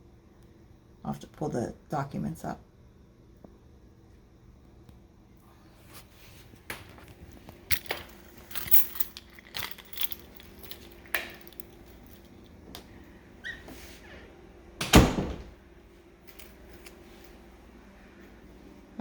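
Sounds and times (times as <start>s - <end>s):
objects being handled: 5.9s - 12.6s.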